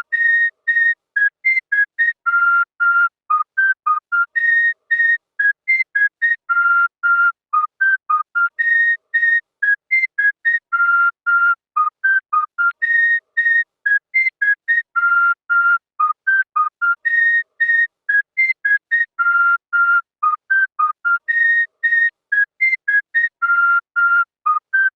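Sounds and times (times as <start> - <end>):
whistled tune: 0.0 - 24.9.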